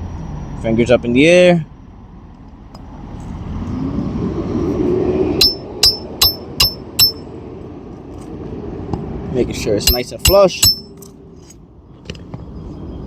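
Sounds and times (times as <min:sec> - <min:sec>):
car passing: 0:00.0 - 0:10.2.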